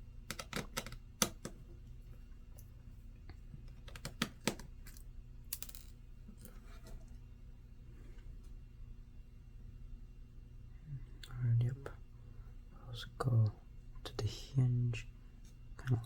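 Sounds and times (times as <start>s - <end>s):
small screws and parts clicking: 0.3s - 1.6s.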